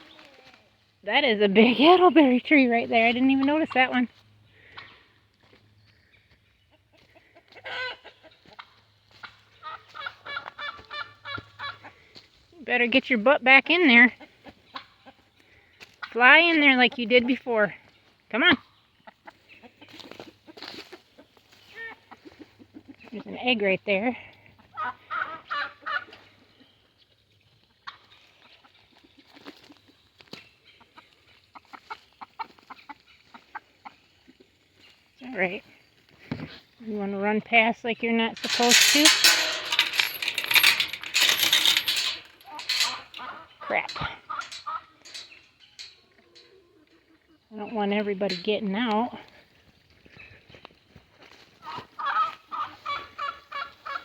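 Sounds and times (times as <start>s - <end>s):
chickens clucking: 6.4s - 12.0s, 42.0s - 49.1s, 51.6s - 54.0s.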